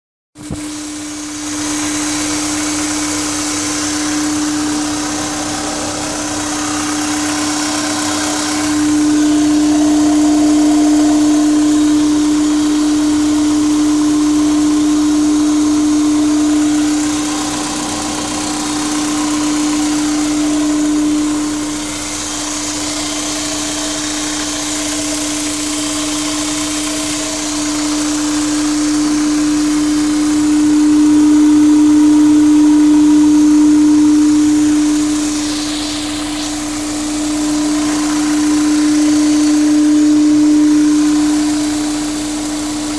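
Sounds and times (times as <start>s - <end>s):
car engine hum: 1.0s - 24.9s
intake hiss: 34.6s - 42.0s.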